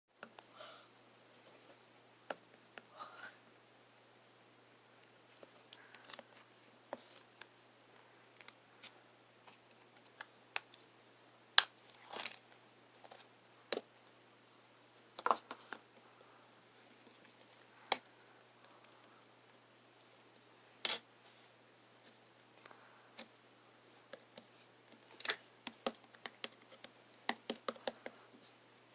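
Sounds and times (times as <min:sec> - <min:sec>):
small objects clicking and tapping: 0:24.9 - 0:28.2.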